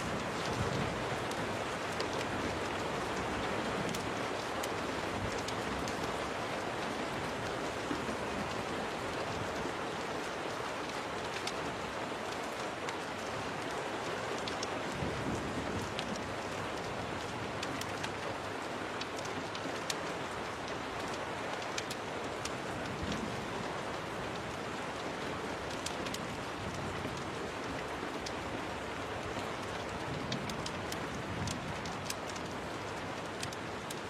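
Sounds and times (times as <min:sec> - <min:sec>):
rain pattering on a window: 0:00.0 - 0:34.0
wood fire crackling: 0:00.0 - 0:34.0.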